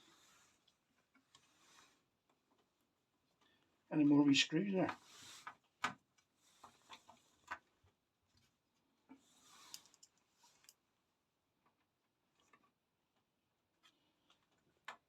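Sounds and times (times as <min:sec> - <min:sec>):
small screws clicking and rustling: 0:09.4 - 0:10.8.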